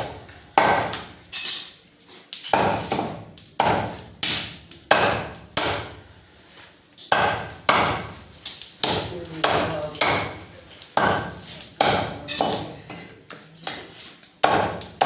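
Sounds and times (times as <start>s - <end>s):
cleaver chopping through bone: 0.0s - 1.2s, 2.5s - 6.0s, 7.1s - 8.2s, 8.8s - 10.4s, 11.0s - 12.7s, 13.6s - 15.0s.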